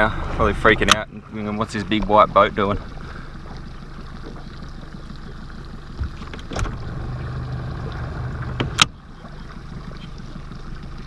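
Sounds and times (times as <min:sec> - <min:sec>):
water washing: 0:00.0 - 0:11.0
wind: 0:00.0 - 0:11.0
electric motor humming: 0:05.9 - 0:11.0.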